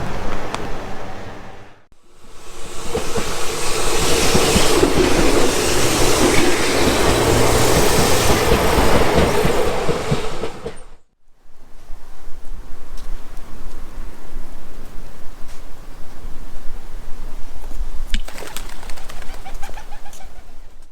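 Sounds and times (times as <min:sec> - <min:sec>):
train whine: 0:00.0 - 0:11.1
train wheels clattering: 0:02.3 - 0:11.0.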